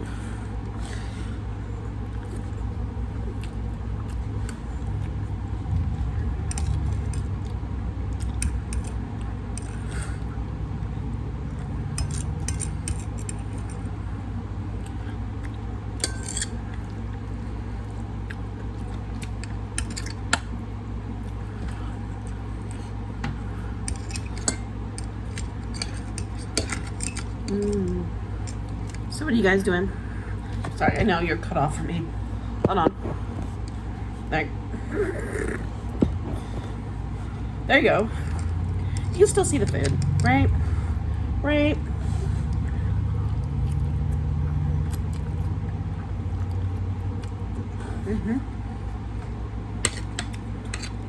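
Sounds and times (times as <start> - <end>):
low hum: 0.0 - 51.0
utensils clinking on dishes: 6.4 - 7.3, 8.2 - 10.2, 11.9 - 13.9, 16.0 - 16.9, 19.2 - 20.4, 23.8 - 29.0, 49.8 - 51.0.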